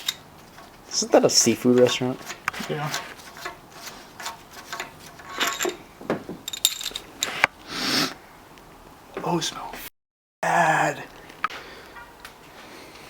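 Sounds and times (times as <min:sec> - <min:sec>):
metal tools clinking: 0:00.0 - 0:05.8, 0:06.4 - 0:07.4
metal scrape: 0:01.4 - 0:05.8.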